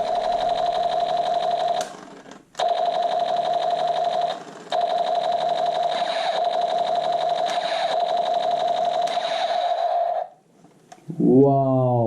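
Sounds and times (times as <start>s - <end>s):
toy gun buzzing tone: 2.6s - 10.3s.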